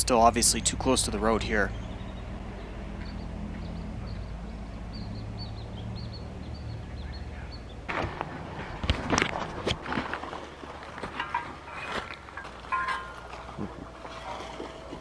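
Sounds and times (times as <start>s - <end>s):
small bird chirping: 1.4s - 7.8s.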